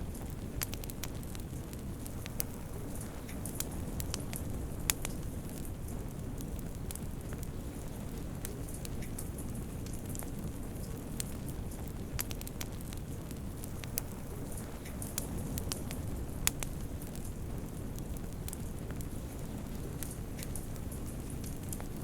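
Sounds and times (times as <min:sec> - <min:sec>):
fire crackles and pops: 0:00.0 - 0:22.0
rumble of fire flames: 0:00.0 - 0:22.0.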